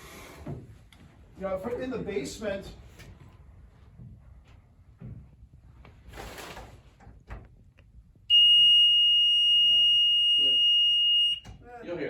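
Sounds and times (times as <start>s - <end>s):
shrill alarm tone: 8.3s - 11.5s.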